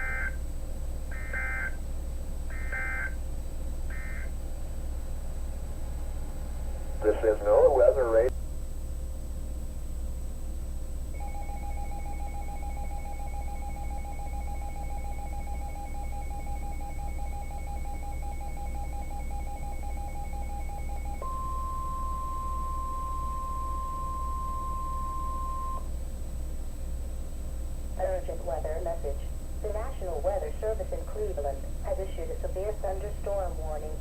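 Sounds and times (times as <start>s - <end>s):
steady warning alarm tone: 0.0s - 0.5s, 1.1s - 1.8s, 2.4s - 4.4s, 11.1s - 25.9s
pulsing electronic data signal: 2.5s - 4.4s, 11.2s - 25.9s.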